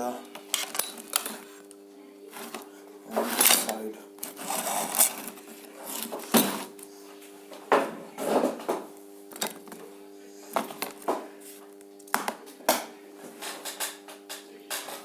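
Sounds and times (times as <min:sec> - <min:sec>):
tools knocking and scraping: 0:02.4 - 0:06.8, 0:13.3 - 0:15.0.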